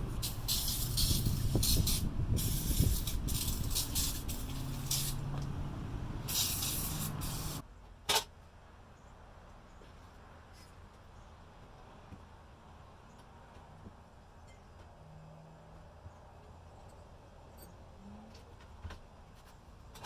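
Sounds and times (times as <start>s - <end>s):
spray paint hissing: 0.0s - 5.3s, 6.2s - 7.6s.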